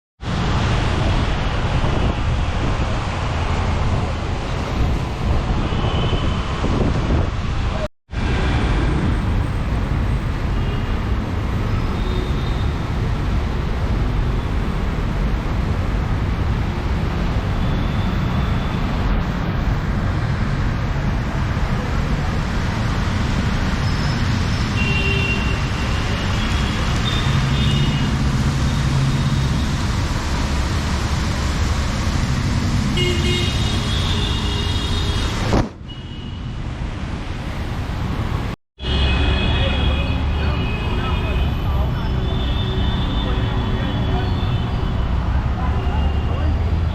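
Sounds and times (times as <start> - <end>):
traffic on wet street: 0.2 - 46.9
rain: 20.1 - 33.0
vehicle horn: 33.0 - 35.3.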